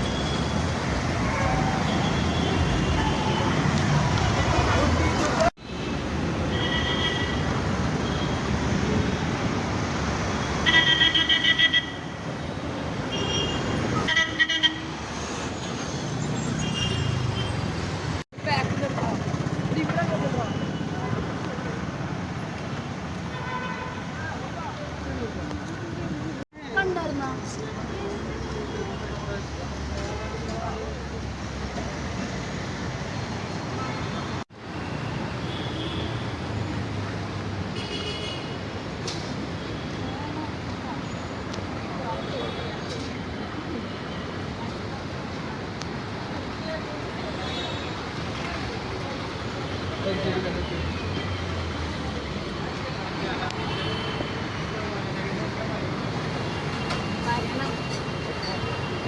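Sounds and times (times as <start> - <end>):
passing vehicles rushing: 0.0 - 6.6
road traffic: 0.0 - 59.0.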